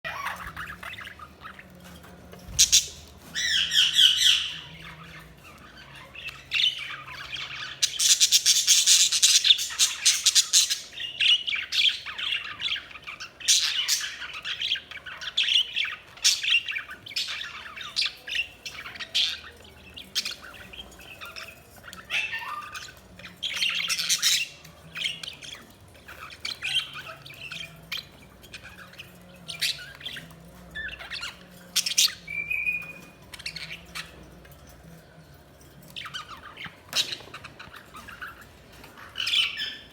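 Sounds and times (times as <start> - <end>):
budgies chirping and squawking: 0.0 - 39.9.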